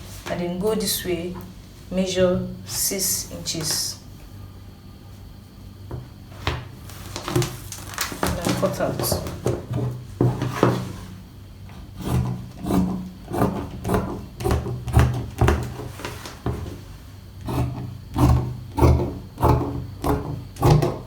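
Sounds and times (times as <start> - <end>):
scissors snipping fabric: 17.6 - 21.0.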